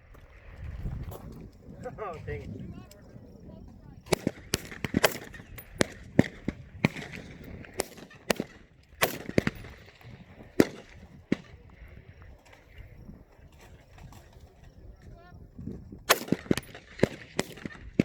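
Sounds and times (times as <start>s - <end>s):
rifle shots: 4.0s - 11.5s, 16.1s - 18.0s.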